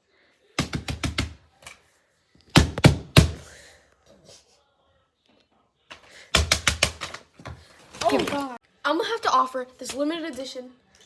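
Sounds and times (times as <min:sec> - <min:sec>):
fidget toys knocking and clicking: 0:00.6 - 0:01.4, 0:06.0 - 0:07.5.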